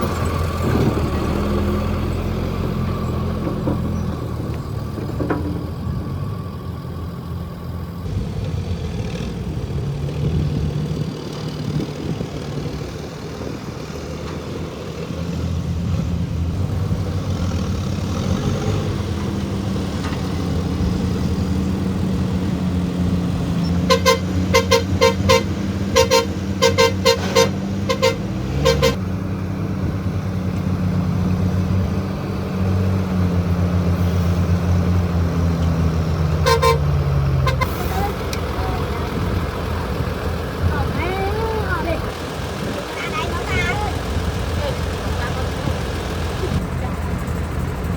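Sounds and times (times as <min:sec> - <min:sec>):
heavy diesel machinery running: 0:00.0 - 0:47.9
horn tooting: 0:23.6 - 0:29.0, 0:36.4 - 0:38.9.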